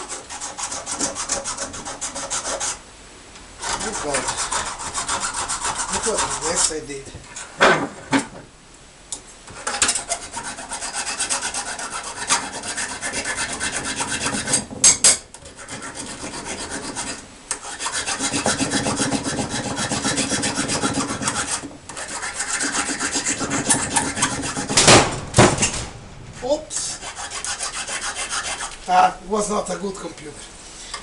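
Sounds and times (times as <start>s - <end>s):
abrasive rasping on metal: 0.0s - 2.8s, 3.6s - 7.6s, 9.5s - 24.9s, 26.7s - 29.0s.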